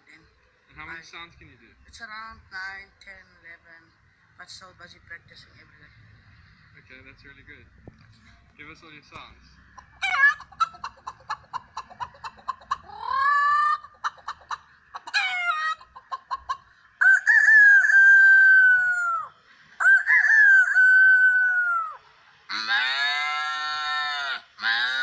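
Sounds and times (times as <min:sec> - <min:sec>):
man imitating chicken clucking: 0:09.8 - 0:16.5, 0:17.2 - 0:25.0
man imitating rooster crow: 0:19.9 - 0:25.0.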